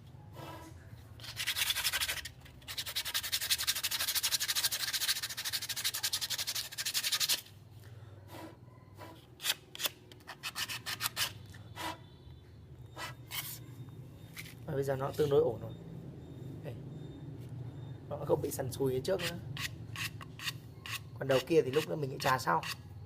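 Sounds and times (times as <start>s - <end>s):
sandpaper rubbing bamboo: 0.4s - 7.5s, 8.3s - 12.0s, 19.2s - 22.8s.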